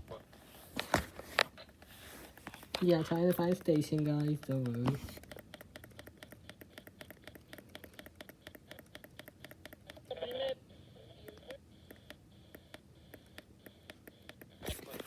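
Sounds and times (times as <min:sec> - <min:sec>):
radio tuning clicks: 0:02.4 - 0:10.6, 0:11.2 - 0:15.0.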